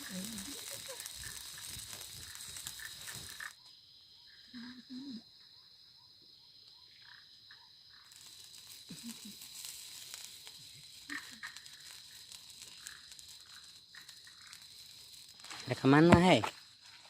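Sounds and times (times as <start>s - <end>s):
high-pitched insect chorus: 0.0s - 17.0s.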